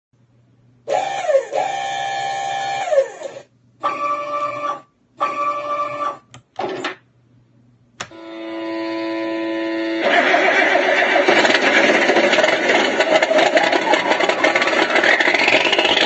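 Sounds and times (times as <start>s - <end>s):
engine hum: 10.0s - 16.0s.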